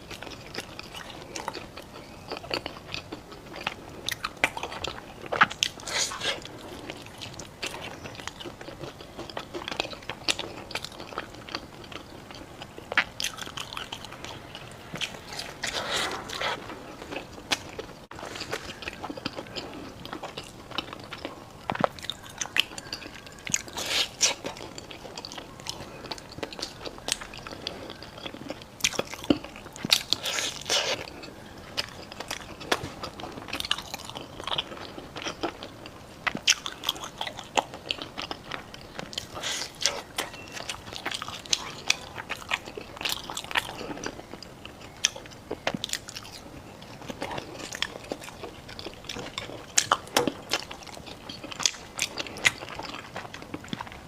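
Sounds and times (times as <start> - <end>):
crunchy chewing of crisp food: 0.0 - 54.0.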